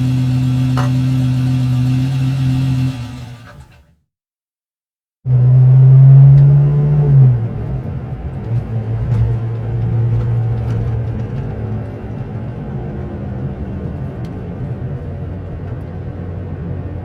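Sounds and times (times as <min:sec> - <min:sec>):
car engine running: 0:00.0 - 0:03.8.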